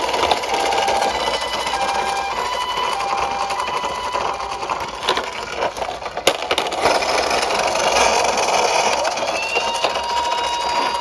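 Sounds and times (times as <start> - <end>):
two-tone ambulance siren: 0.0 - 5.4, 8.6 - 11.0
toy car wheels rolling: 0.0 - 11.0.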